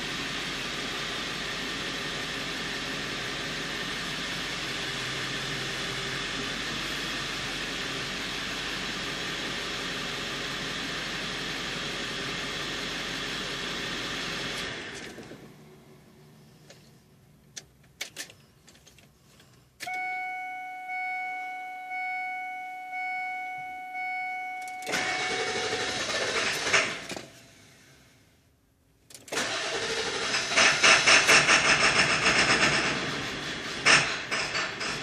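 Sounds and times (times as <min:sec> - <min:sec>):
dash warning chime beeping: 0:19.8 - 0:26.0
diesel engine running: 0:22.9 - 0:28.2, 0:29.2 - 0:35.0
starter cranking engine: 0:24.8 - 0:27.3, 0:29.1 - 0:35.0.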